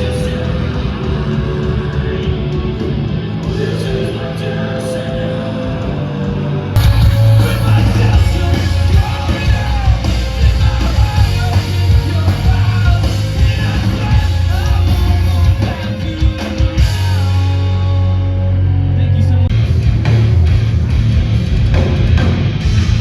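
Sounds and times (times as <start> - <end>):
heavy rock band playing: 0.0 - 23.0
pounding drums: 6.8 - 17.2.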